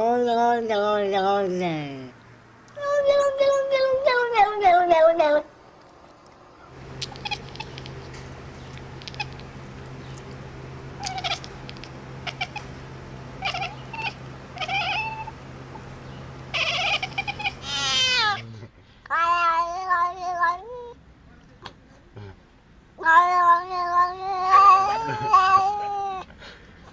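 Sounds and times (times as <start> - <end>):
steady low hum: 5.4 - 18.8
cat meowing: 7.0 - 8.1, 9.0 - 9.4, 11.0 - 12.7, 13.4 - 15.3, 16.5 - 18.5, 19.1 - 20.9, 23.0 - 26.2.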